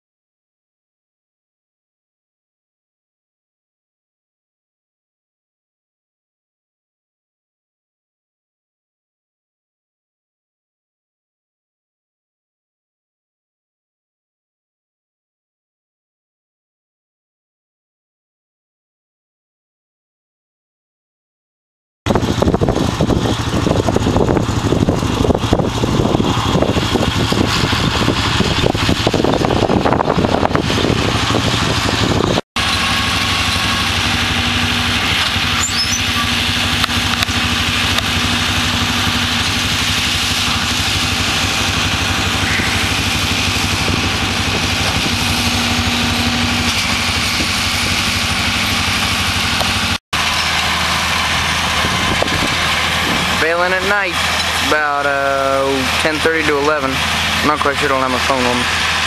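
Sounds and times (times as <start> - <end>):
tractor engine running: 22.1 - 59.0.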